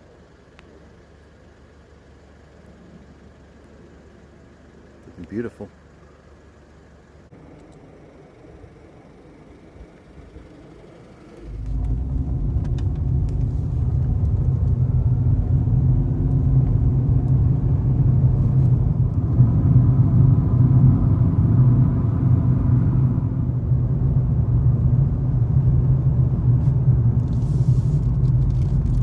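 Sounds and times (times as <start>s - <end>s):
car engine and road rumble: 0.0s - 29.0s.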